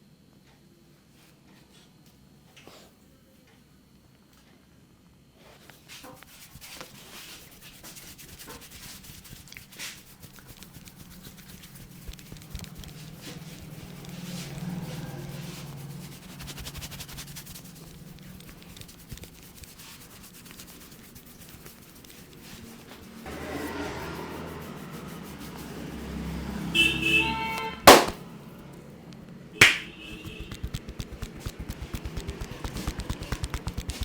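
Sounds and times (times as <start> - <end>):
fast rhythmic hand tapping: 7.2 - 26.3, 27.9 - 28.2, 29.6 - 34.0
hands smacking head: 27.9 - 28.2, 29.6 - 34.0.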